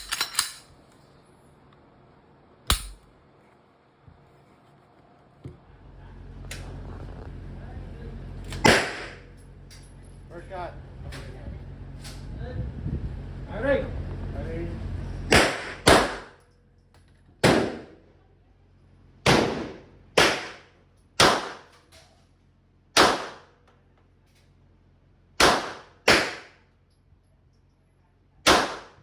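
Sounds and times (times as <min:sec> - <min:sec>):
pistol shots: 0:02.7 - 0:03.0, 0:08.6 - 0:09.3, 0:15.3 - 0:16.4, 0:17.4 - 0:18.0, 0:19.2 - 0:21.7, 0:23.0 - 0:23.5, 0:25.4 - 0:26.6, 0:28.4 - 0:29.0.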